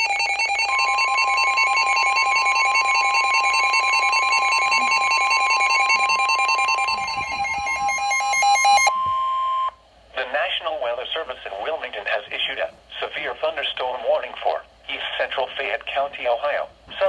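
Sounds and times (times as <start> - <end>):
rapid pulsing electronic beeping: 0.0 - 8.9
steady high alert tone: 0.0 - 9.7.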